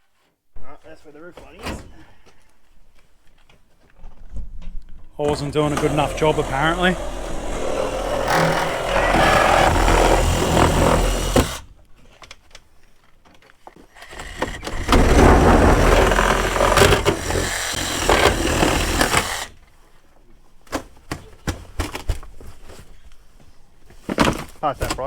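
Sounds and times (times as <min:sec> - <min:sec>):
reciprocating saw cutting sheet metal: 0:05.2 - 0:11.7, 0:14.2 - 0:19.5.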